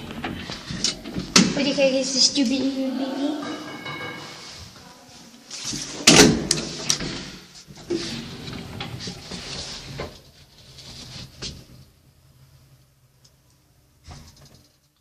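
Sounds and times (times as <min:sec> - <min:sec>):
lift doors sliding: 0:05.7 - 0:11.4.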